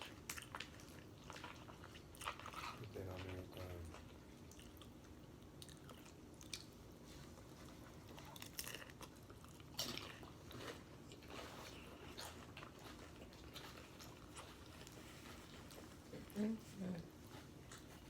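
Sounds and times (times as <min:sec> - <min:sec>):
person crunching tortilla chips: 0:08.2 - 0:15.0.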